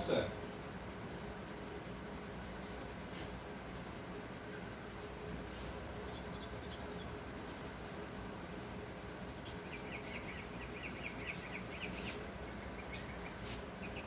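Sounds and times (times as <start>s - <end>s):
faint background hum: 0.0s - 14.0s
small bird chirping: 5.9s - 7.8s, 9.1s - 14.0s.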